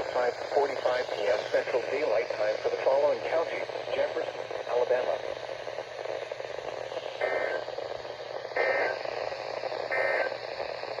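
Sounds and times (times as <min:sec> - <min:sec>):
radio receiver hiss: 0:00.0 - 0:11.0
warbling data bursts: 0:07.0 - 0:07.7.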